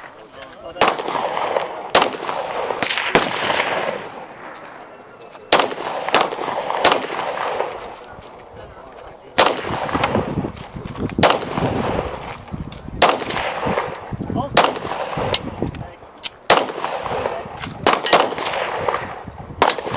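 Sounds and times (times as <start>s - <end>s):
pistol shots with echo: 0.6s - 4.9s, 5.5s - 8.1s, 9.3s - 10.4s, 11.2s - 19.9s.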